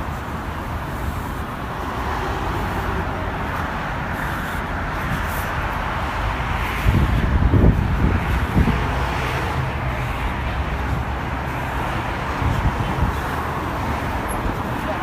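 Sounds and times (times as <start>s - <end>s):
low traffic rumble: 0.0s - 15.0s
wind on microphone: 4.9s - 15.0s.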